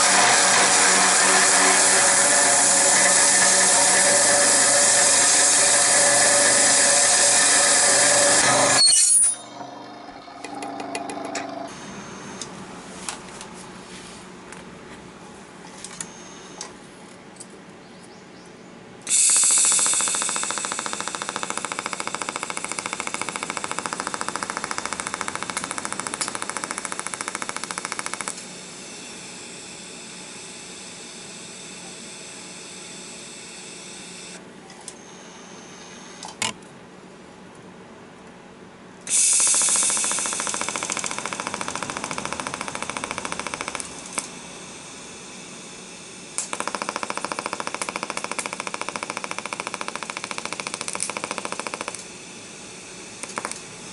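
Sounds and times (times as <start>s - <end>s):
power tool rattling buzz: 0.0s - 11.7s, 19.1s - 29.1s, 39.1s - 44.4s, 46.1s - 52.2s.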